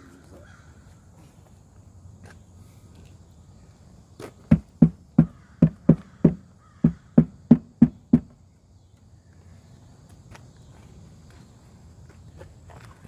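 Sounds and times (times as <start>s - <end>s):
hollow knocks on wooden box: 4.5s - 8.3s.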